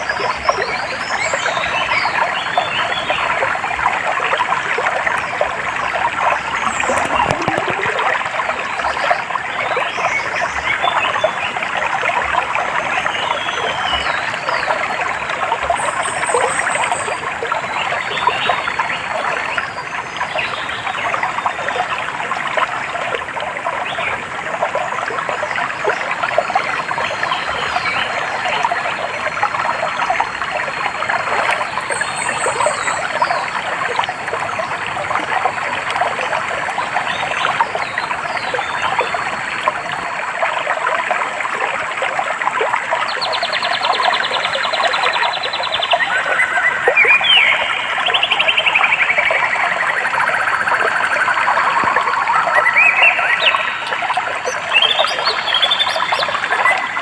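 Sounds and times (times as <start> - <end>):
stream trickling over stones: 0.0 - 57.0.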